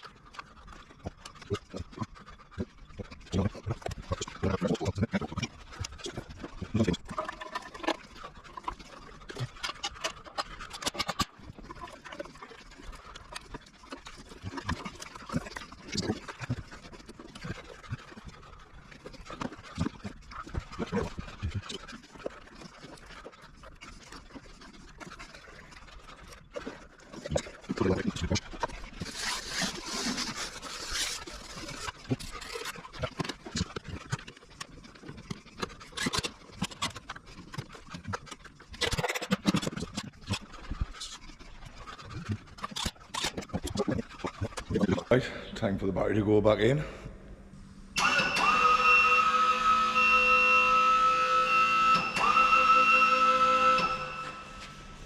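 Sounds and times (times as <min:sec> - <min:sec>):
tools clicking and clinking: 0:38.8 - 0:39.8.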